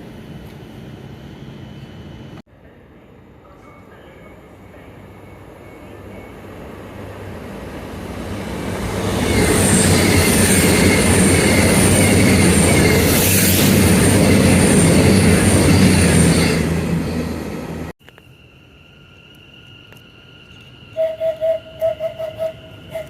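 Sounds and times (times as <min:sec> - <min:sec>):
train passing with loud rumble: 0:00.0 - 0:17.9.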